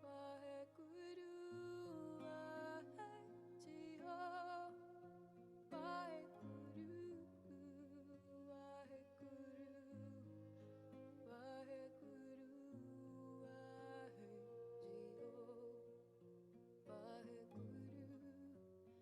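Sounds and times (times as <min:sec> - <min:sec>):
wavering sung voice: 0:00.0 - 0:19.0.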